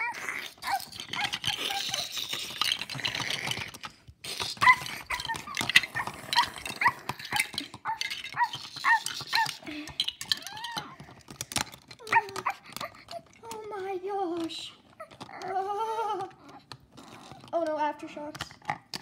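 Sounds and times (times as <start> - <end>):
dog-like whimpers and yelps: 0.0 - 3.6, 4.3 - 13.6, 14.8 - 17.4
clicks and clatter: 0.0 - 19.0.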